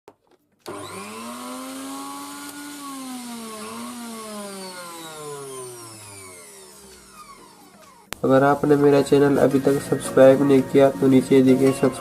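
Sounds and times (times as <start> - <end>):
mixer grinder motor whining: 0.6 - 8.9.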